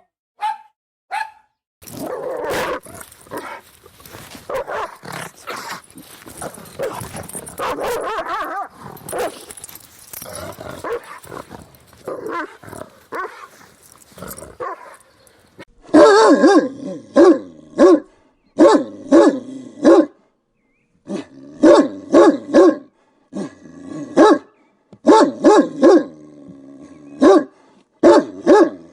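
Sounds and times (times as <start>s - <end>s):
dogs barking: 0.4s - 20.2s, 21.6s - 22.9s, 24.2s - 26.1s, 27.2s - 28.8s
dogs growling: 1.8s - 15.6s.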